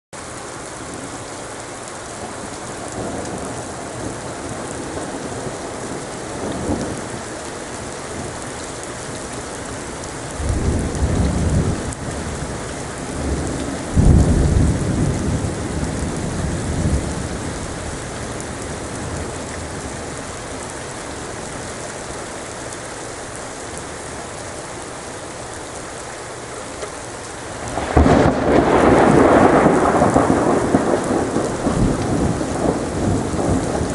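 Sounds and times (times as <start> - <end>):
steady rain falling: 0.2 - 33.9
low thunder rumbling: 2.6 - 21.8, 26.7 - 33.9
loud thunderclap: 13.2 - 17.4, 27.6 - 33.9.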